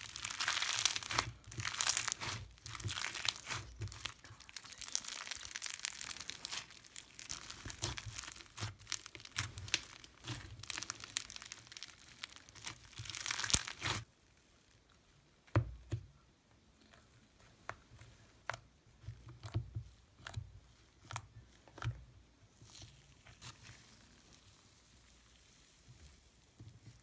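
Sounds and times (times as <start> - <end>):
slime squished by hand: 0.0 - 14.0.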